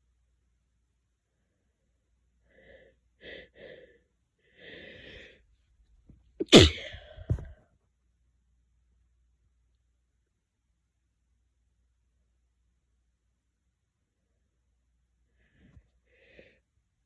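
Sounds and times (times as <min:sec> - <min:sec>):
breathy catches of breath: 0:06.4 - 0:07.5
person sneezing: 0:06.4 - 0:07.5.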